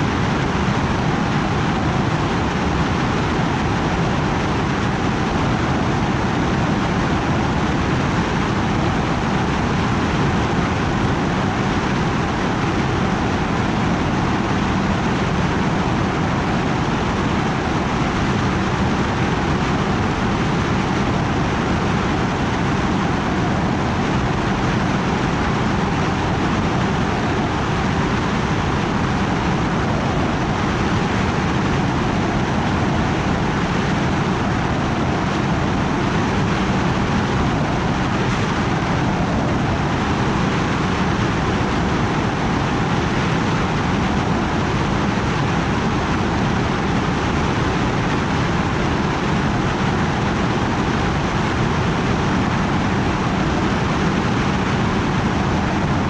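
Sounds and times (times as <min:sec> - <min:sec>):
drone rushing noise: 0:18.9 - 0:56.0.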